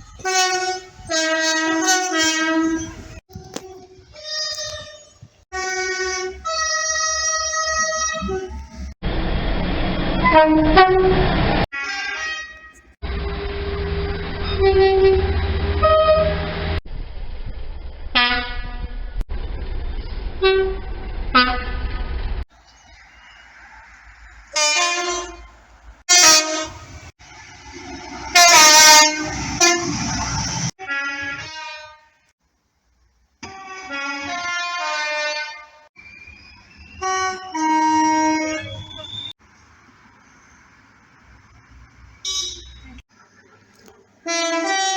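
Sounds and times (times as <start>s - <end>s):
train horns blasting: 0.2s - 8.9s, 10.2s - 16.8s, 18.1s - 19.0s, 20.4s - 22.0s, 24.5s - 27.1s, 28.2s - 32.3s, 33.4s - 35.9s, 36.9s - 39.3s, 44.2s - 44.9s.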